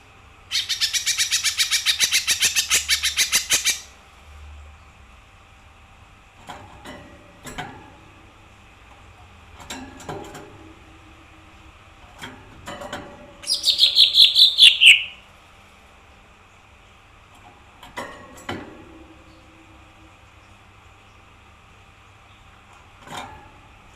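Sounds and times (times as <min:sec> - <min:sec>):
bird chirping: 0:00.5 - 0:03.9, 0:13.4 - 0:15.2.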